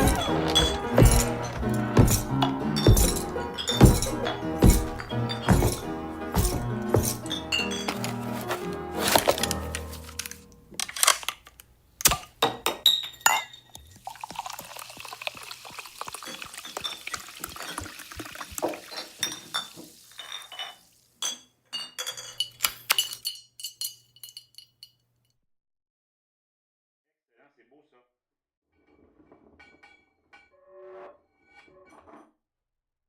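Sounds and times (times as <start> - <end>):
glassware clinking: 0.0 - 9.2, 12.4 - 15.1, 16.1 - 25.0
liquid poured into a glass: 13.9 - 20.9.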